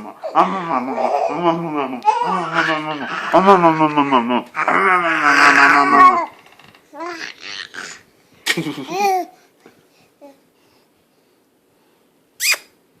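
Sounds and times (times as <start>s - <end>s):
baby babbling: 6.9s - 8.0s.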